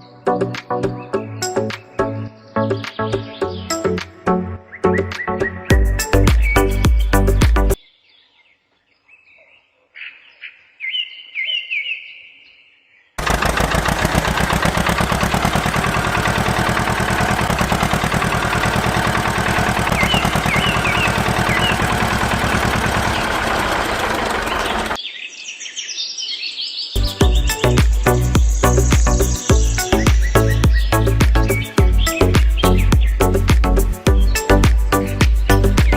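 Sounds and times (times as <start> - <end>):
birds chirping: 1.0 - 4.0, 4.6 - 35.9
motor running with fast rattle: 13.2 - 25.0.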